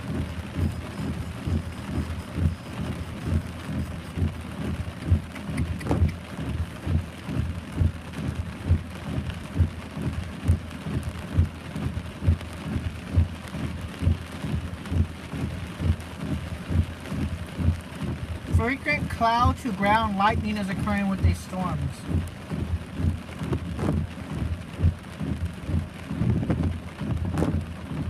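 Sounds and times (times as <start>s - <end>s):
heavy rain falling: 0.0s - 28.0s
raindrops thudding close by: 0.0s - 28.0s.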